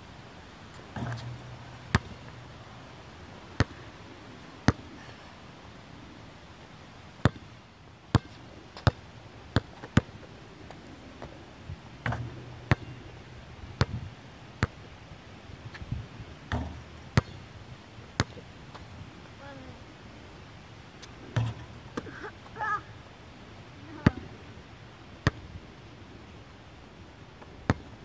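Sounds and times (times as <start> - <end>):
basketball bouncing on hard court: 1.0 - 2.2, 12.1 - 12.9, 16.5 - 17.4.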